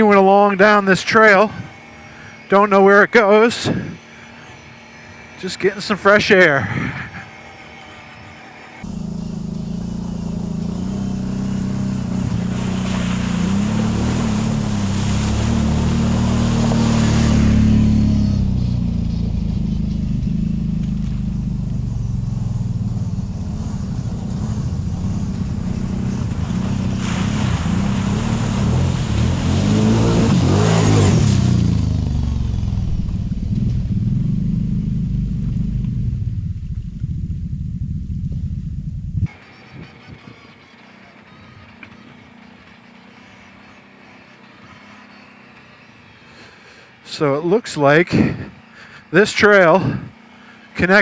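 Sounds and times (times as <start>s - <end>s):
atv engine running: 0.0s - 51.0s.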